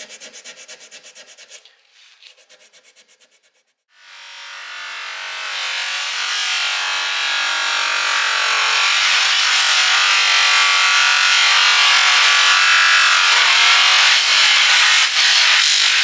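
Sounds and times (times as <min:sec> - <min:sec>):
power tool grinding metal: 0:04.0 - 0:15.2.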